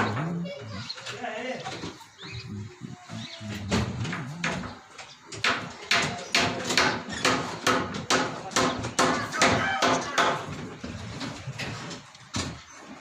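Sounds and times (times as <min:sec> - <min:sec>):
voice or animal call: 0:02.2 - 0:04.8.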